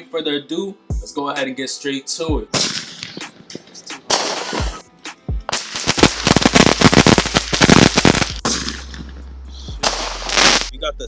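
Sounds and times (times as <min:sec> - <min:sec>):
music: 0:00.0 - 0:11.0
fireworks cracking and popping: 0:02.6 - 0:04.8, 0:05.5 - 0:09.0, 0:09.8 - 0:10.7
fireworks thumps: 0:05.5 - 0:09.1.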